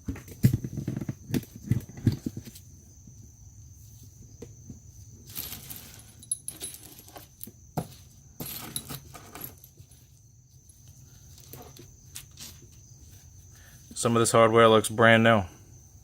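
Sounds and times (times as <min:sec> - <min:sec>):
metal nuts and bolts jangling: 0:05.3 - 0:07.5, 0:08.4 - 0:10.1.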